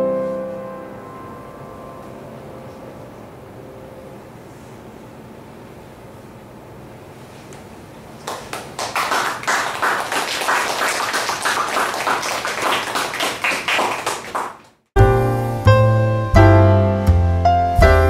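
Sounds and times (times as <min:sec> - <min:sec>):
audience applauding: 0:08.2 - 0:14.8.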